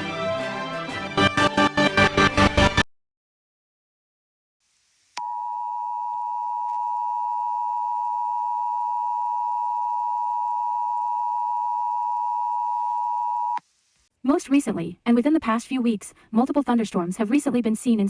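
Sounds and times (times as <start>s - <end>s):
loud steady electronic tone: 1.2s - 2.9s.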